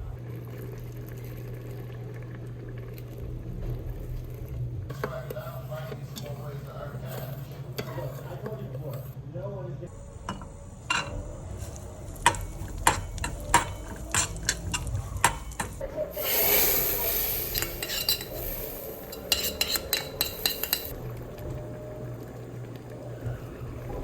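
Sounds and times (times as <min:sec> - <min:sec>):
hissing sizzle: 0:00.0 - 0:09.2, 0:09.9 - 0:24.0
metal spoon clinking in pot: 0:10.3 - 0:11.2, 0:16.6 - 0:20.9.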